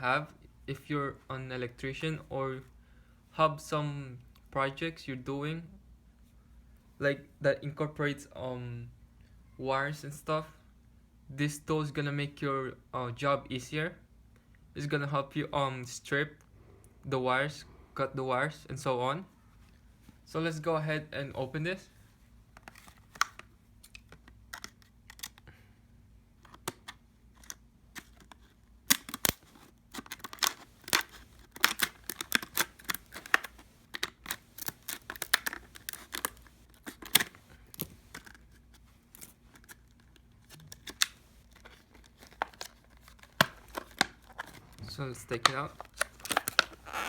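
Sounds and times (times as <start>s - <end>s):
packaging tearing and crinkling: 26.6s - 47.0s.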